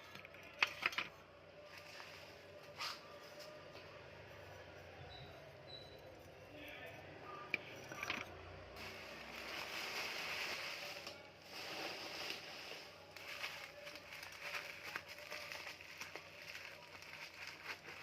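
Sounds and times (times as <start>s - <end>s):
packaging rustling and crinkling: 8.8s - 18.0s.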